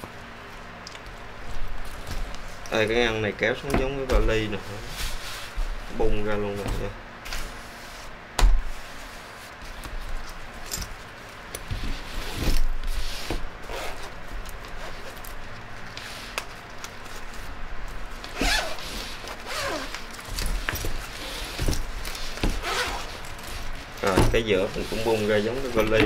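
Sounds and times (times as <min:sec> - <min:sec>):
heavy fabric rustling: 0:01.2 - 0:26.0
zipper being pulled open: 0:13.6 - 0:14.2, 0:18.2 - 0:20.2, 0:22.5 - 0:23.3.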